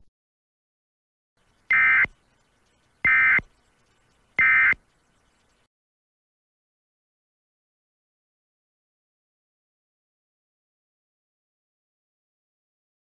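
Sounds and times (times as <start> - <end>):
buzzing data tone bursts: 1.4 - 5.6.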